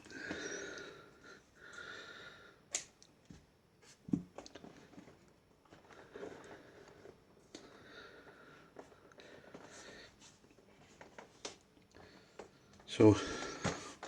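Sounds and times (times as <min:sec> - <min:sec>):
faint handling sounds: 0:03.0 - 0:14.0.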